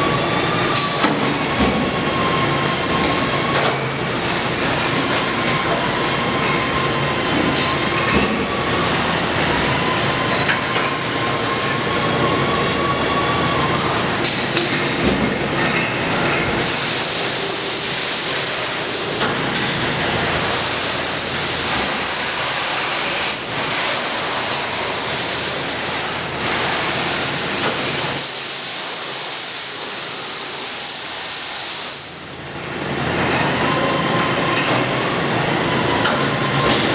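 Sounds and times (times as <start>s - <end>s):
hissing machinery noise: 0.0s - 32.5s.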